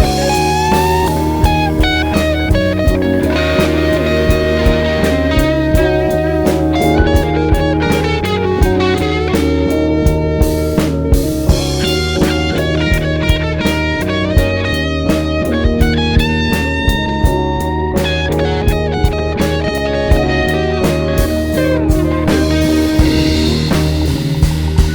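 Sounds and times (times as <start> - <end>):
bass: 0.0 - 24.9
drum kit beat: 0.0 - 24.9
electric lead guitar: 0.0 - 24.9.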